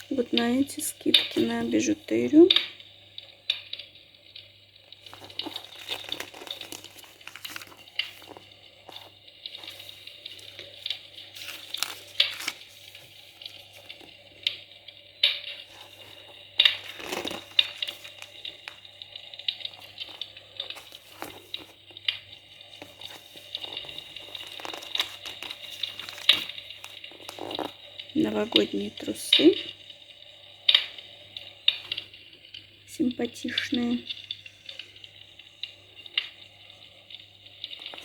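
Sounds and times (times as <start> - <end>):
paper pages rustling and turning: 0.0 - 2.0, 5.0 - 28.9, 37.7 - 38.0
faint steady hum: 0.0 - 38.0.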